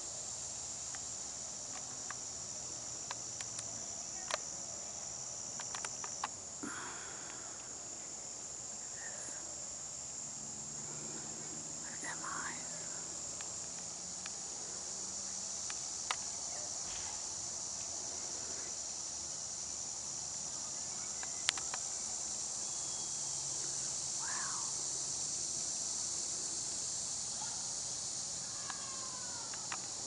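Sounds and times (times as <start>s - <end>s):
insects chorus: 0.0s - 30.0s
sharp clicks: 5.6s - 6.4s, 21.2s - 21.8s.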